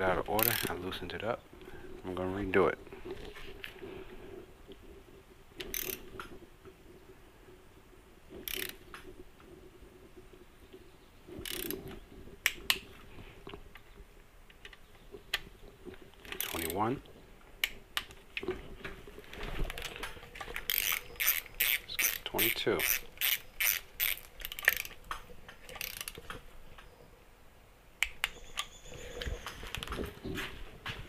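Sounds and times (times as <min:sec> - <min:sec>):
socket wrench ratcheting: 0:00.4 - 0:00.8, 0:05.6 - 0:06.1, 0:08.4 - 0:08.8, 0:11.4 - 0:11.8, 0:20.6 - 0:25.0, 0:25.7 - 0:26.2.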